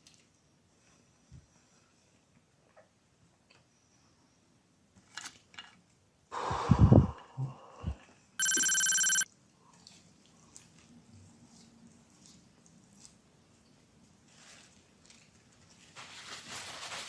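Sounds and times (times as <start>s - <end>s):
electronic ringing tone: 8.4s - 9.2s.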